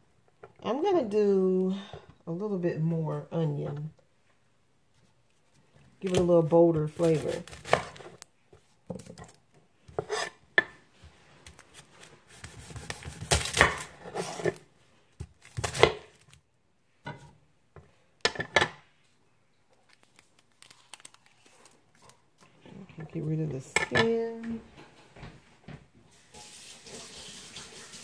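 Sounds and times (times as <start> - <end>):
knife slicing onion: 6.1 - 8.2, 12.3 - 14.6.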